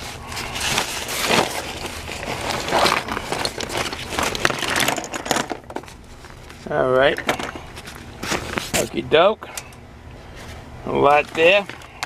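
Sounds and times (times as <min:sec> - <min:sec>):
rummaging rustling: 0:00.0 - 0:09.0, 0:10.3 - 0:12.0
screwdrivers clattering together: 0:03.3 - 0:05.9, 0:07.1 - 0:08.0.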